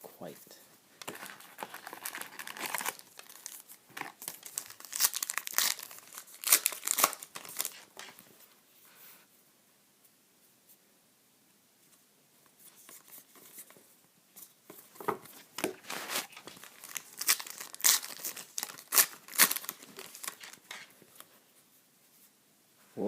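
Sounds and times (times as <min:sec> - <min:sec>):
foil wrapper tearing and crinkling: 0:01.1 - 0:07.9, 0:15.8 - 0:20.9.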